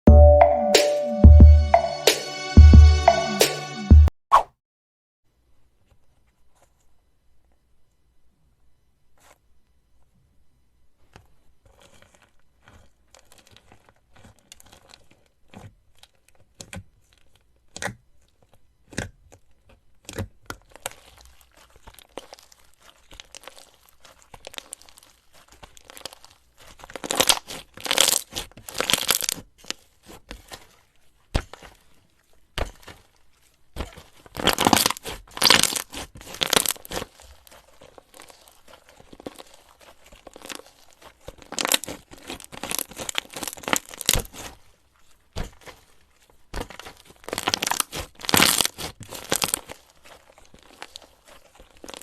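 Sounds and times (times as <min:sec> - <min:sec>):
slime crackling when squeezed: 0:20.1 - 0:30.6, 0:33.8 - 0:44.6, 0:46.5 - 0:52.0.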